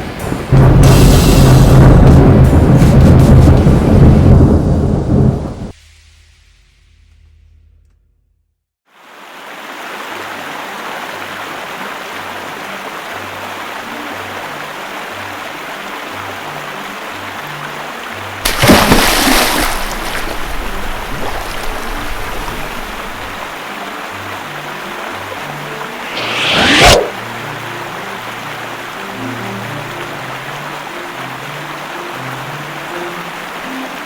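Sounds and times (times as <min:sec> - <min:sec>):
background music with bass line: 0:00.2 - 0:05.6
rush of air into chamber: 0:00.7 - 0:04.3, 0:26.0 - 0:27.2.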